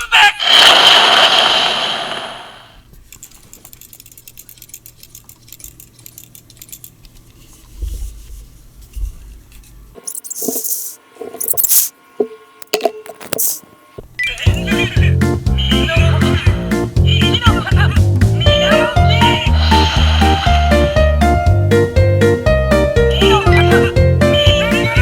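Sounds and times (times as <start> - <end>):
music: 14.4 - 25.0.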